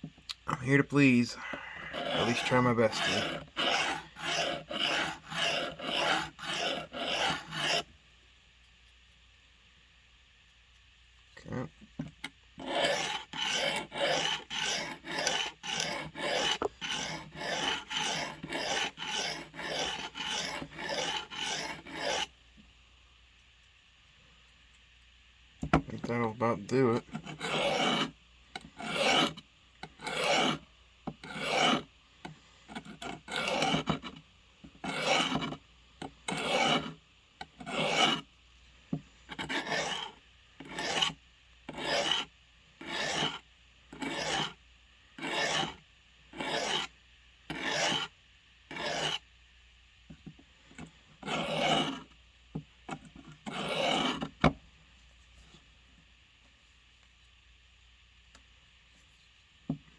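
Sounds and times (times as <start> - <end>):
blade sharpening rasping strokes: 1.9 - 7.8, 12.6 - 22.3, 26.9 - 28.1, 28.8 - 30.6, 31.2 - 31.9, 32.8 - 34.2, 34.8 - 35.6, 36.3 - 37.0, 37.6 - 38.2, 39.3 - 41.2, 41.8 - 43.4, 44.0 - 44.6, 45.2 - 45.8, 46.4 - 46.9, 47.5 - 48.1, 48.7 - 49.2, 51.3 - 52.0, 53.5 - 54.3.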